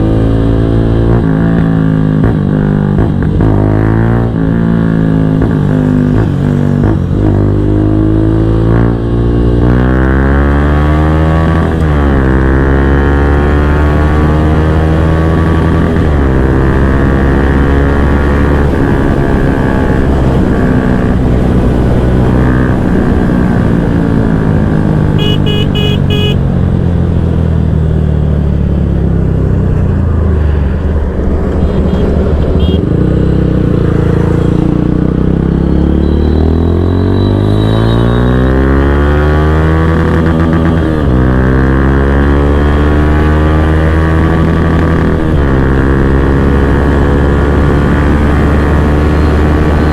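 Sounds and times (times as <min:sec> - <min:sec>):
motorcycle engine: 0:00.0 - 0:49.9.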